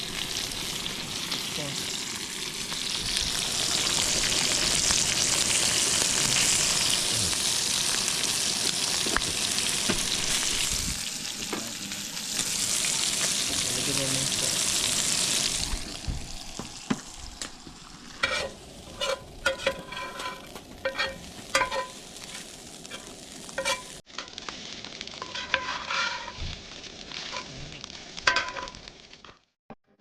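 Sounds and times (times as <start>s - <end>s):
food sizzling in a pan: 0.0s - 29.5s
utensil clinking and scraping pan: 18.2s - 24.4s, 25.2s - 26.4s, 28.2s - 28.8s.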